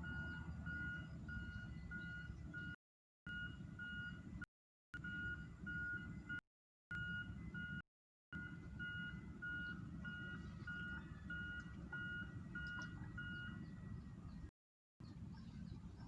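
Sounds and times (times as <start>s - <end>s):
short electronic beeps: 0.0s - 4.3s, 5.0s - 7.8s, 8.4s - 13.7s.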